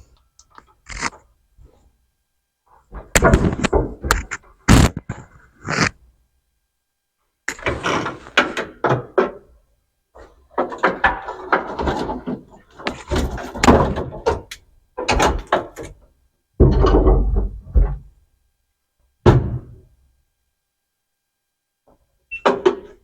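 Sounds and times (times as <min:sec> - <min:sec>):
knocks and rattles of tools: 0:10.5 - 0:16.0.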